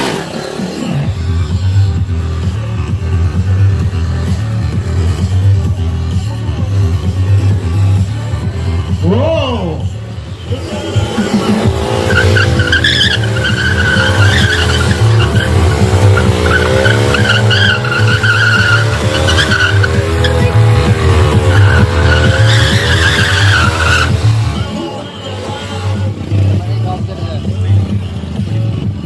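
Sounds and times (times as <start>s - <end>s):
motorcycle engine revving high: 9.8s - 28.6s
tyre squealing on tarmac: 10.3s - 26.5s.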